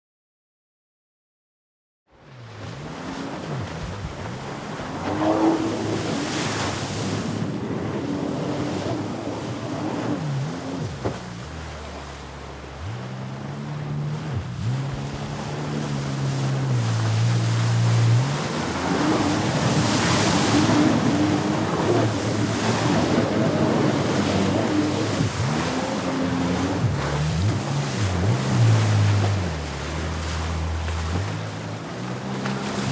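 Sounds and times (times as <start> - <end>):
jet ski engine: 2.1 - 32.9
water spray rushing: 14.2 - 32.9.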